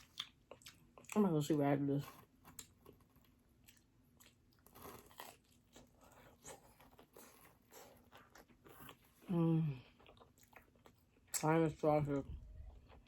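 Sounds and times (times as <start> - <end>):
faint chewing and crunching food: 0.0 - 13.0.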